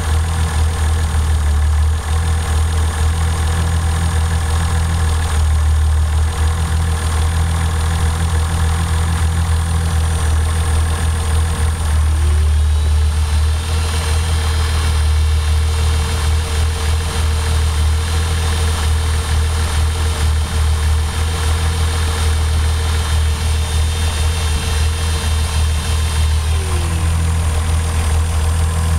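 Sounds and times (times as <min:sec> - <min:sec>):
misfiring car engine idling: 0:00.0 - 0:28.9
rising whine: 0:10.1 - 0:18.0, 0:19.2 - 0:28.9.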